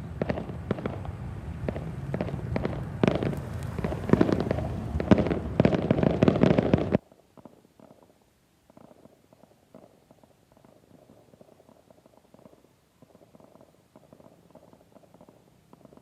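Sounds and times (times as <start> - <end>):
low rumble: 0.0 - 7.0
fireworks bangs and crackling: 0.0 - 16.0
faint scattered pops: 0.2 - 16.0.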